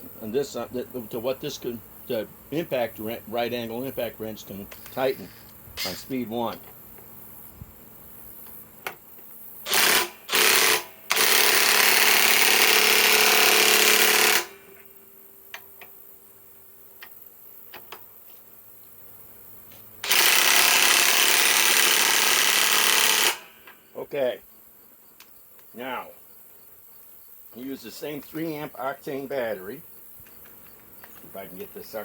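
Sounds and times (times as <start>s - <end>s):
impact wrench hammering bolts: 9.7s - 14.8s, 20.0s - 23.8s.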